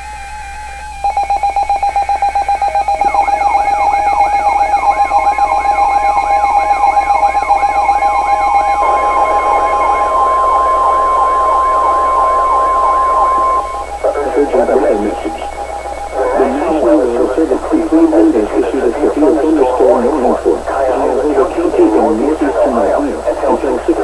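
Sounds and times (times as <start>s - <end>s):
steady high alarm tone: 0.0s - 24.0s
rapid pulsing beep: 0.9s - 24.0s
siren-like yelp: 0.9s - 24.0s.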